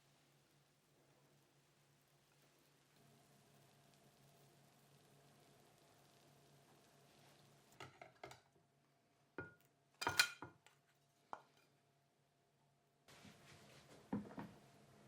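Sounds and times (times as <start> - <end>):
kitchenware clinking: 9.4 - 10.6.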